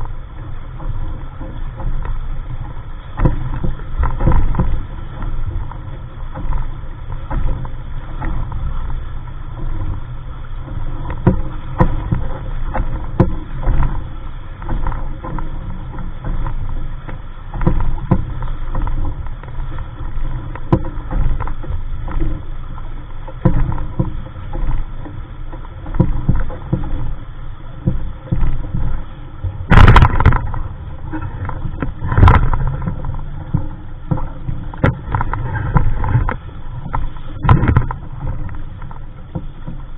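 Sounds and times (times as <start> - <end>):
water slapping against hull: 0.0 - 39.9
wind rumbling on microphone: 0.0 - 39.9
loud knocks or splashes: 29.6 - 38.5.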